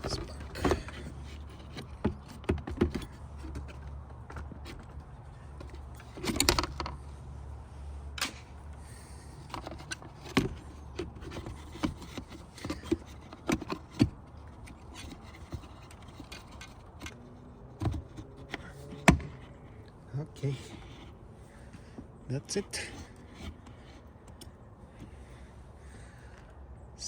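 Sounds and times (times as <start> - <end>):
plastic parts rattle: 0.0 - 7.0, 9.3 - 19.7.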